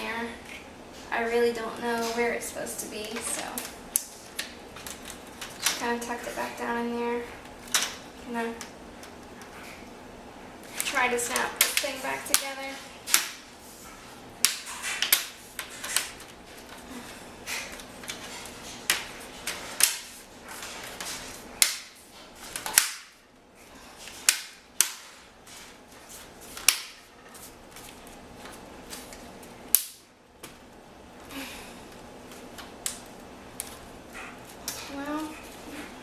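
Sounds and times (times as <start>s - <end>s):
plastic clips snapping: 22.5s - 23.2s, 26.6s - 27.0s, 29.7s - 30.6s.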